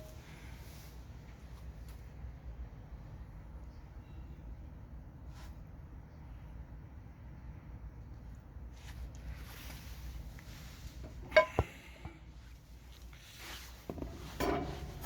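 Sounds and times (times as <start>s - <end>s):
faint rustling: 8.7s - 15.0s
metal stove clank: 11.2s - 11.8s, 14.0s - 15.0s.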